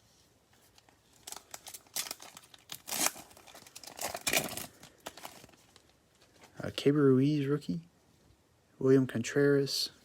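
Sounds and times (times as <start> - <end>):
foil wrapper tearing and crinkling: 1.1 - 5.9.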